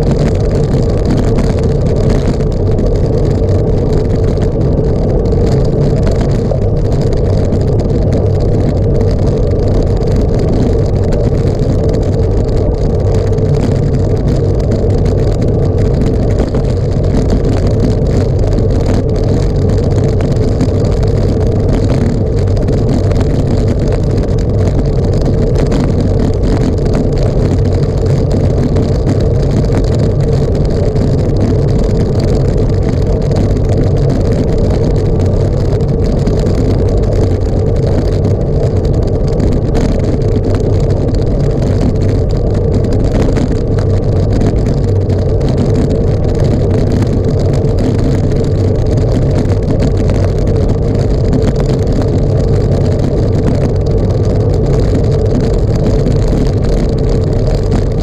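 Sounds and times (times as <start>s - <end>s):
wind rushing on microphone: 0.0s - 58.0s.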